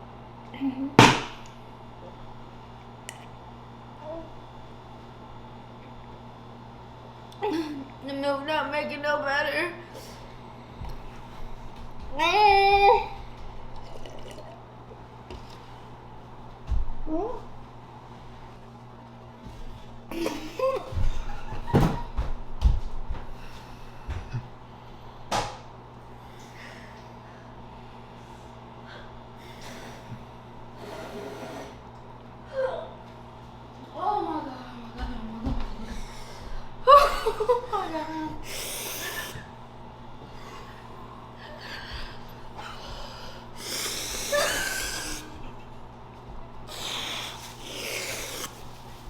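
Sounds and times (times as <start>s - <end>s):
person breathing hard: 23.3s - 25.2s, 26.1s - 31.8s, 38.4s - 39.6s, 40.2s - 45.5s, 46.7s - 48.8s.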